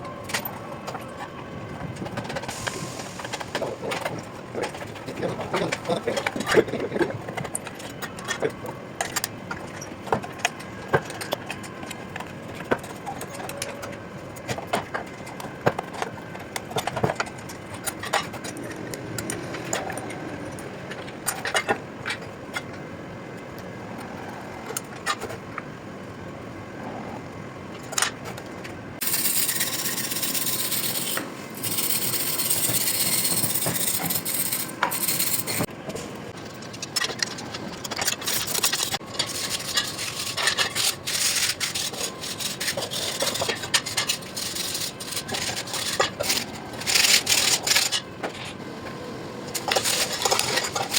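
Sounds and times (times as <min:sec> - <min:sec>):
loud steady hiss: 0:02.5 - 0:03.8
metal tools clicking and knocking: 0:29.0 - 0:35.7, 0:36.4 - 0:48.6, 0:49.5 - 0:50.9.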